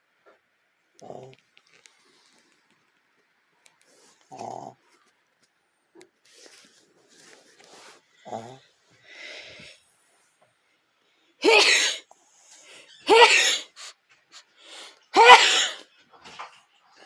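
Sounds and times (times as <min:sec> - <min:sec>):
person sneezing: 0:11.4 - 0:12.1, 0:13.0 - 0:13.8, 0:15.2 - 0:15.8.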